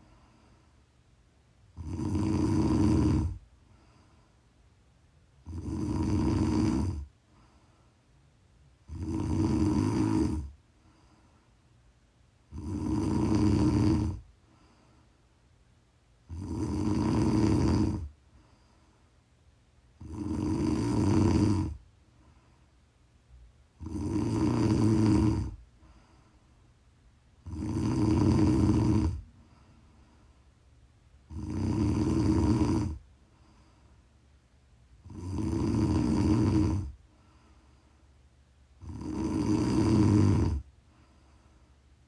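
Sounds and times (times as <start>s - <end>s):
quiet breathing: 0.0s - 42.0s
woman snoring: 1.7s - 3.4s, 5.4s - 7.1s, 8.8s - 10.6s, 12.5s - 14.3s, 16.2s - 18.1s, 20.0s - 21.8s, 23.8s - 25.6s, 27.4s - 29.3s, 31.3s - 33.0s, 35.0s - 37.0s, 38.8s - 40.7s.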